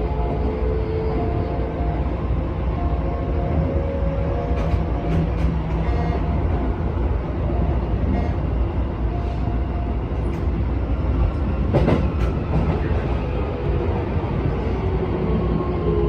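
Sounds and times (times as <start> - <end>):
train wheels rumbling on rail: 0.0 - 16.0
train clatter: 4.3 - 6.8, 10.2 - 13.3.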